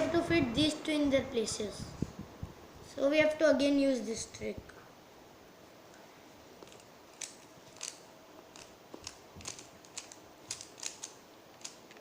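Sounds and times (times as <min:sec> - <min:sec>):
plastic puzzle cube clicks: 0:06.7 - 0:12.0.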